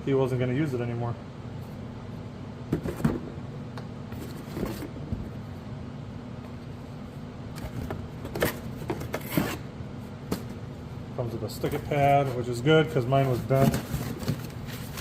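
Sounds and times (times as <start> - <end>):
steady low hum: 0.0 - 15.0
packaging knocks and rustles: 13.3 - 15.0.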